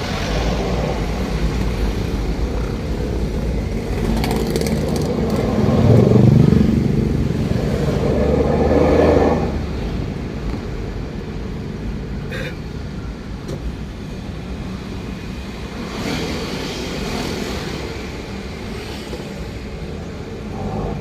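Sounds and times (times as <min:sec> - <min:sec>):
deep snoring engine exhaust: 0:20.4 - 0:21.0.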